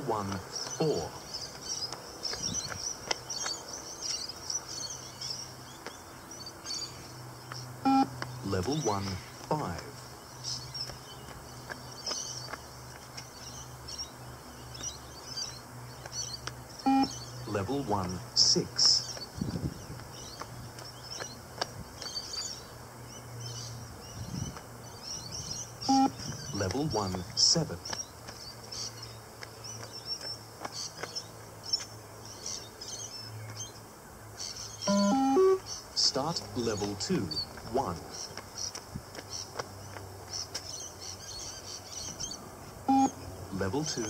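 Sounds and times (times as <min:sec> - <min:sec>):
birds chirping: 0:00.0 - 0:44.0
insects chirping: 0:00.0 - 0:44.0
steady low hum: 0:00.0 - 0:44.0
loud beep: 0:16.9 - 0:17.1, 0:34.9 - 0:35.6, 0:42.9 - 0:43.2.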